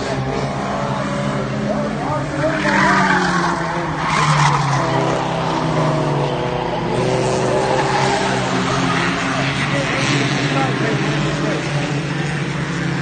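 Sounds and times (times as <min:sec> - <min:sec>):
race car engines running hard: 0:00.0 - 0:13.0.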